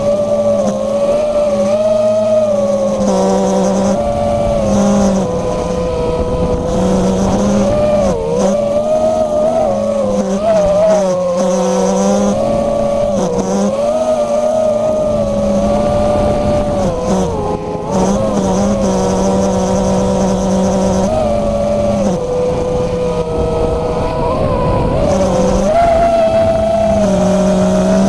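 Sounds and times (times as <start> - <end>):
drone motors whining: 0.0 - 28.0
steady low hum: 0.0 - 28.0.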